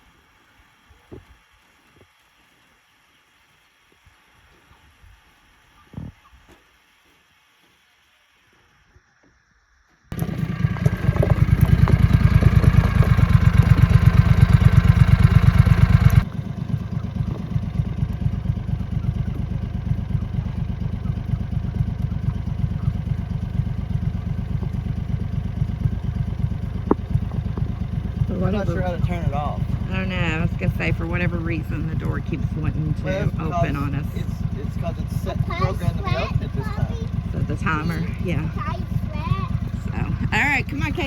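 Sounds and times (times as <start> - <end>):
vehicle engine running: 10.1 - 41.0.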